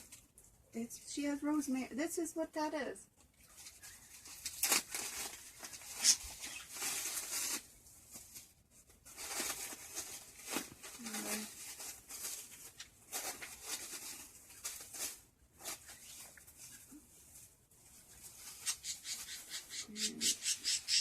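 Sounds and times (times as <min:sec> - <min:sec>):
packaging crinkling and rustling: 0:03.4 - 0:18.6
packaging tearing crackles: 0:04.4 - 0:07.7.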